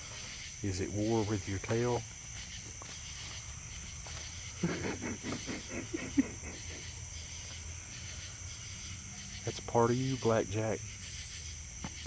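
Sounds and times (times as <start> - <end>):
insects chirring: 0.0 - 12.0
scuffling and rustling: 1.0 - 5.6.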